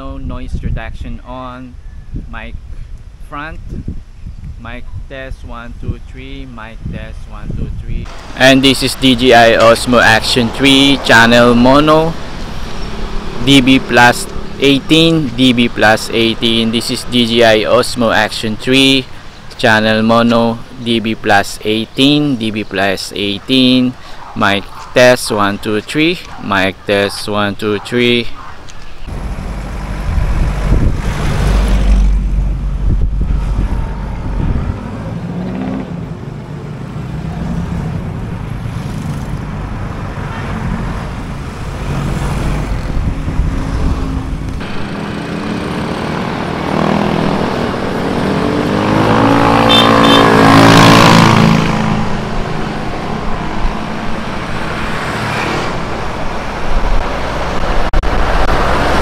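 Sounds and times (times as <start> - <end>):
vehicle engines passing: 7.5 - 59.0
vehicle passing close: 8.1 - 17.6, 29.1 - 59.0.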